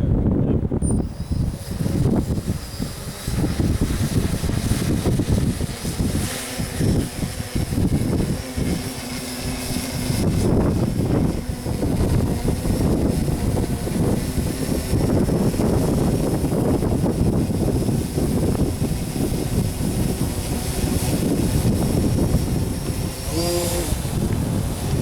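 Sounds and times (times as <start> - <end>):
wind buffeting microphone: 0.0 - 25.0
electric motors whining: 0.8 - 25.0.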